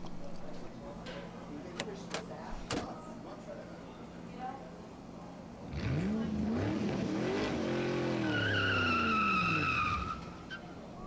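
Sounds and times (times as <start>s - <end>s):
car engine revving: 5.7s - 10.0s
tyre squeal: 8.1s - 10.7s.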